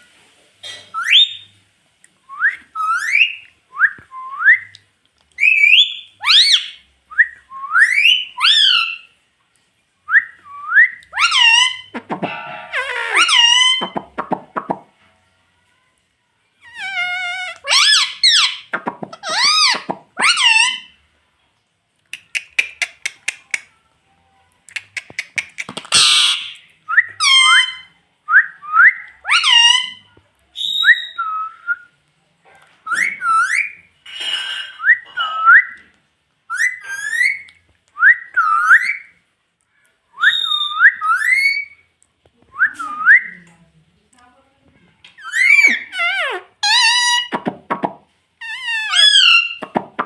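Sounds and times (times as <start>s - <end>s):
parrot whistling: 10.7s - 14.2s, 40.2s - 41.8s, 48.4s - 49.7s
parrot squawk: 11.1s - 14.4s, 16.6s - 21.0s, 25.8s - 26.6s, 27.2s - 27.9s, 29.2s - 30.0s, 45.2s - 47.4s, 48.4s - 49.7s.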